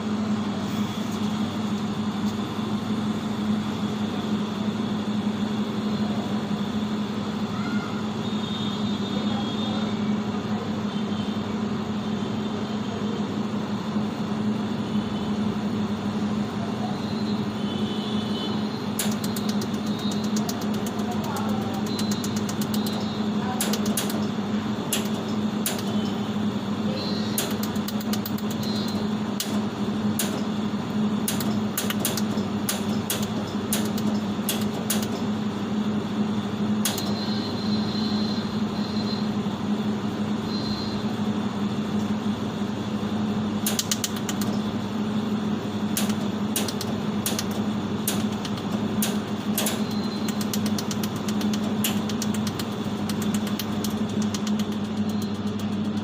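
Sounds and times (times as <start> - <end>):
laser welding machine humming: 0.0 - 56.0
sharp laser pulse clicks: 18.8 - 26.2, 27.3 - 30.5, 31.2 - 35.3, 36.8 - 37.4, 43.6 - 44.7, 45.9 - 56.0.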